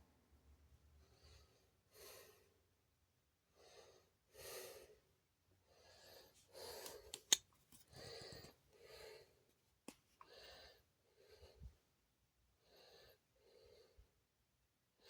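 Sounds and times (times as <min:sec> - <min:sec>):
person breathing softly: 0:03.5 - 0:09.5, 0:10.1 - 0:11.9, 0:12.6 - 0:14.2.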